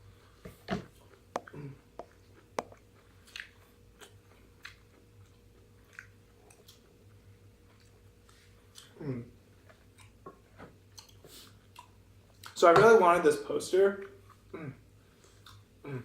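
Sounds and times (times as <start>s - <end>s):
chewing food: 1.0s - 9.0s, 9.6s - 12.6s, 15.2s - 15.7s
mouth clicks and smacks: 1.3s - 4.8s.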